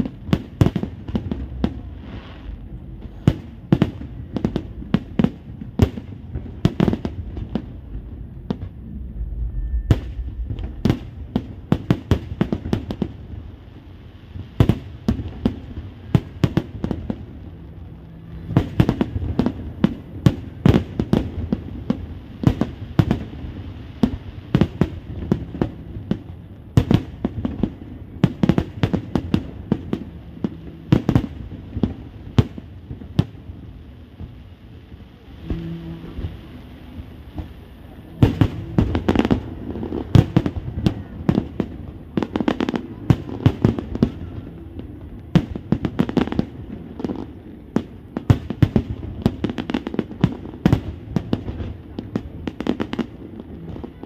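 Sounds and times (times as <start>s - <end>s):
fireworks bangs and crackles: 0.0s - 54.0s
low rumble: 0.9s - 14.2s.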